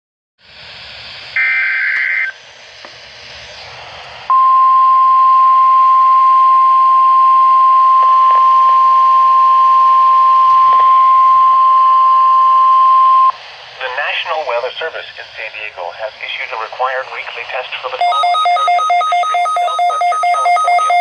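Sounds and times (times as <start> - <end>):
receiver hiss: 0.4 - 21.0
steady warning alarm tone: 1.4 - 2.4, 4.3 - 13.4, 17.4 - 21.0.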